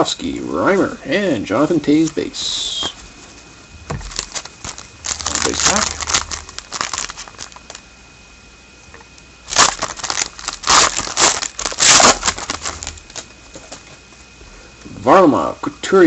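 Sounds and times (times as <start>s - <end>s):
wrapper crinkling: 3.9s - 7.9s, 9.5s - 13.9s
wrapper being torn open: 4.0s - 7.8s, 9.5s - 13.3s.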